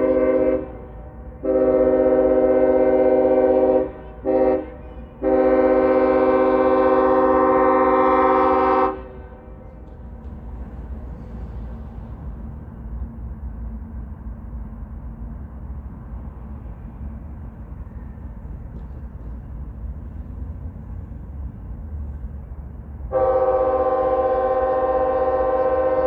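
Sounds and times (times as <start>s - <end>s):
train horn chord: 0.0s - 9.9s, 23.1s - 26.0s
freight train rumble: 0.0s - 26.0s.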